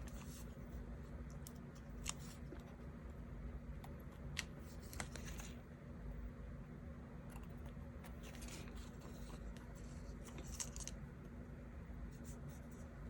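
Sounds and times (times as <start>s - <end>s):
paper rustle: 4.6s - 5.6s, 8.1s - 11.0s.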